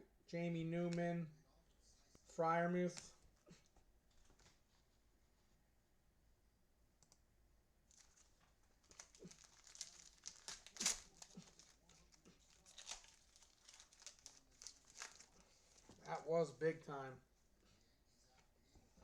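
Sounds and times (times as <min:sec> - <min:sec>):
plastic wrapper crinkling and tearing: 0:07.9 - 0:16.2.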